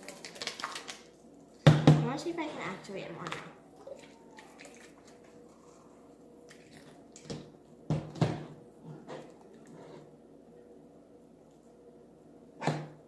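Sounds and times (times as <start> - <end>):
slime squishing: 3.7 - 7.3.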